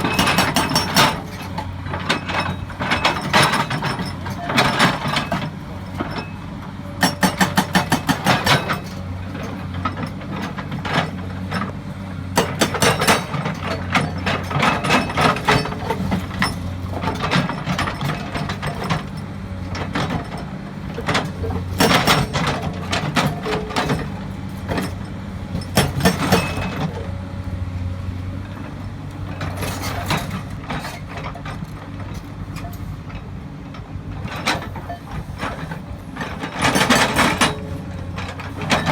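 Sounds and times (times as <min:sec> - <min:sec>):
hydraulic hammer pounding rock: 0:00.0 - 0:06.2, 0:07.0 - 0:11.2, 0:12.3 - 0:19.2, 0:19.8 - 0:27.0
excavator engine running: 0:00.0 - 0:38.9.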